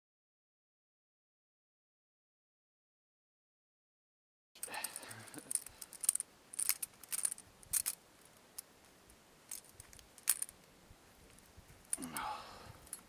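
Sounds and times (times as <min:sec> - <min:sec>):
metal trap clicks and rattles: 0:04.6 - 0:08.0, 0:09.5 - 0:10.6, 0:12.8 - 0:13.0.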